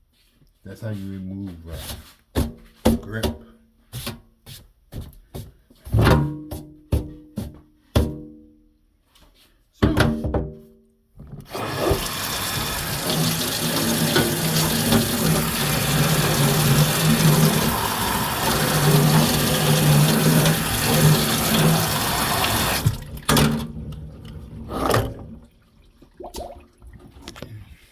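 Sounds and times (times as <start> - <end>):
water running: 11.4 - 27.6.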